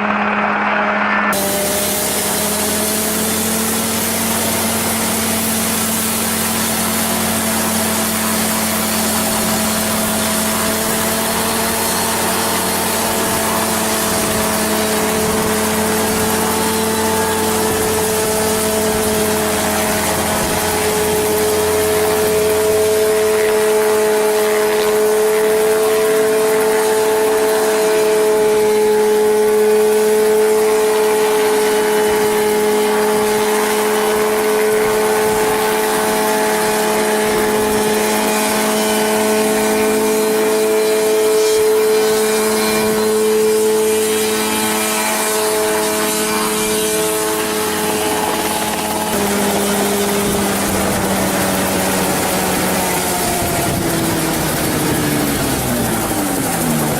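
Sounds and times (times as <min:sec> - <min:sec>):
helicopter engine droning: 0:00.0 - 0:56.9.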